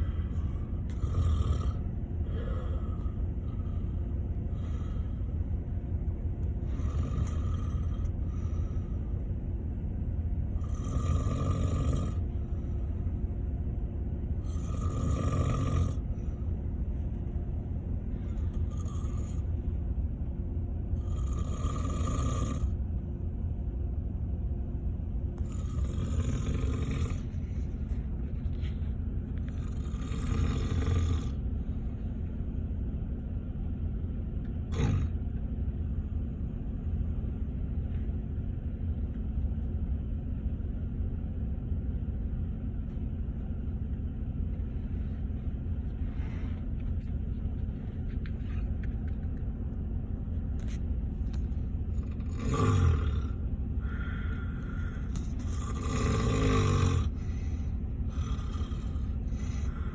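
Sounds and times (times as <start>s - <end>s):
bus cabin rumble: 0.0s - 59.9s
man snoring loudly: 0.9s - 3.7s, 6.6s - 8.3s, 10.6s - 12.3s, 14.4s - 16.2s, 18.5s - 19.5s, 21.0s - 22.8s, 25.4s - 27.4s, 29.5s - 31.4s, 34.7s - 35.2s, 52.0s - 59.9s.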